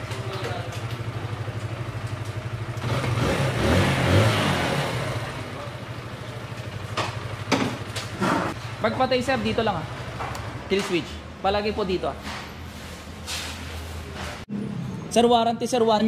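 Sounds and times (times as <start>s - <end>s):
motorcycle engine idling and revving: 0.0s - 10.9s.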